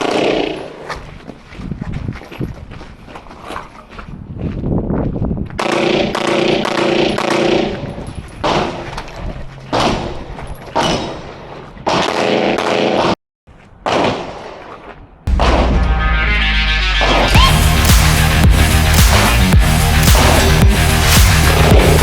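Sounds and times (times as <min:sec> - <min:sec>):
gunshots: 0:00.0 - 0:00.7, 0:05.6 - 0:08.9, 0:11.8 - 0:13.2, 0:15.3 - 0:18.2.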